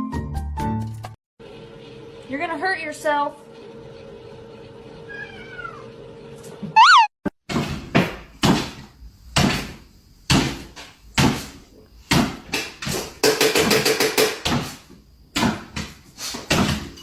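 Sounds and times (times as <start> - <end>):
sharp knocks: 12.1 - 14.8.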